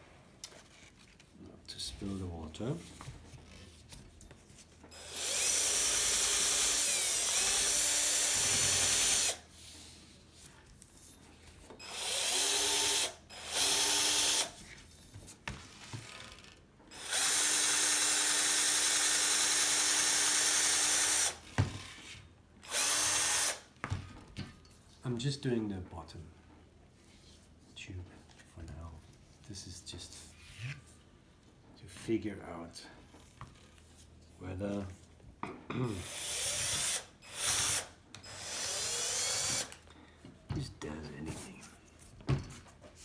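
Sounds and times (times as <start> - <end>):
handheld electric drill running: 4.9 - 9.4, 11.8 - 14.6, 16.1 - 21.5, 22.6 - 23.7, 36.0 - 39.9.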